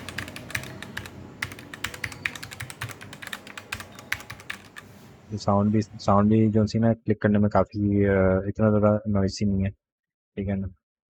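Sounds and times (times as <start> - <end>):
mechanical keyboard typing: 0.0 - 4.9.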